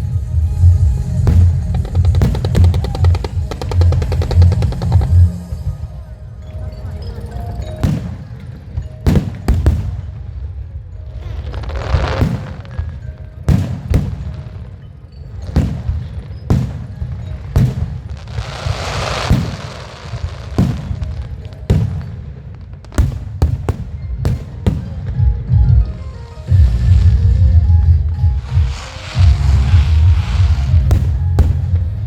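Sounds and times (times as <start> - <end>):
music: 0.0 - 32.0
fireworks bangs: 1.0 - 27.0, 28.4 - 32.0
firework crackling hiss: 28.4 - 31.9.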